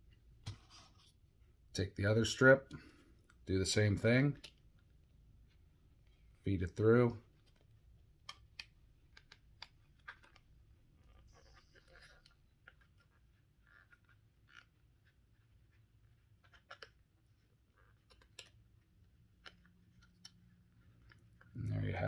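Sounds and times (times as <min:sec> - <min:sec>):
plastic strips scraping rubber: 0:09.1 - 0:18.6.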